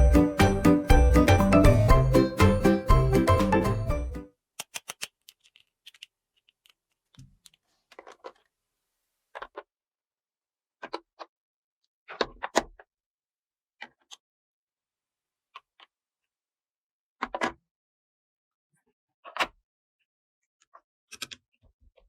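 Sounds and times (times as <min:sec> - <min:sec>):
plastic toy pieces clicking: 0:04.6 - 0:08.4.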